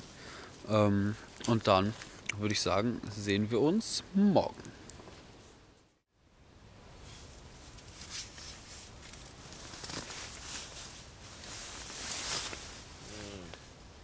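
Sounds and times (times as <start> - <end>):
soft rustling and shuffling: 7.0 - 13.8.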